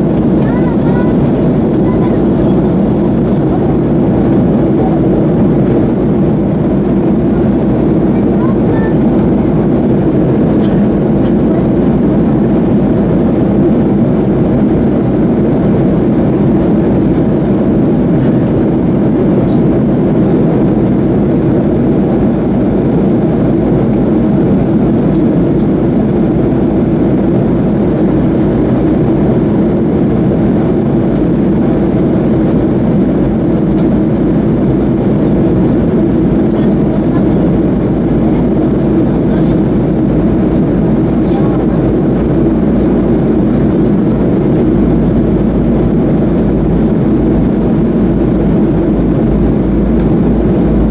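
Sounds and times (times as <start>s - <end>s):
jet engine drone: 0.0s - 50.9s.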